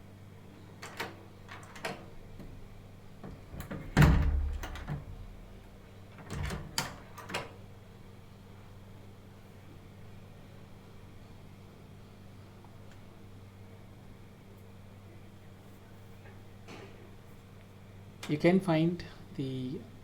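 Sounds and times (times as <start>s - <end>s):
latch and handle clicks: 0.8s - 2.5s, 3.2s - 5.4s, 6.2s - 7.6s
lock hardware clicks and knocks: 3.2s - 5.3s
door shutting thud: 3.3s - 5.5s.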